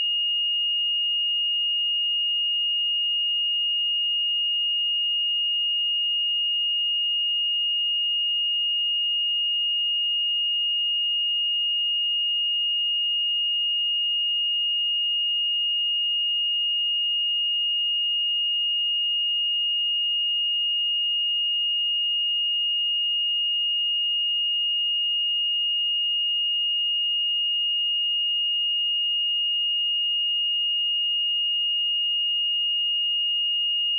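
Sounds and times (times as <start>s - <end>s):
high-pitched sine-wave test tone: 15.7s - 33.9s.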